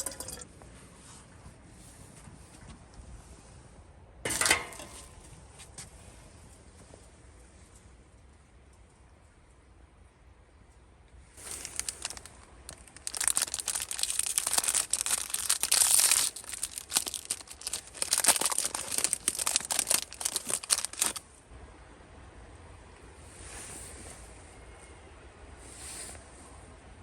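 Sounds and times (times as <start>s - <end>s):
crinkly packaging rustling: 11.4s - 21.2s.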